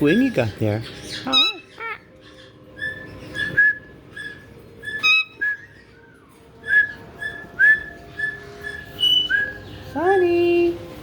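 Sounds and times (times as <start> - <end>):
parrots whistling: 0.8 - 10.0
harsh parrot call: 1.2 - 5.8.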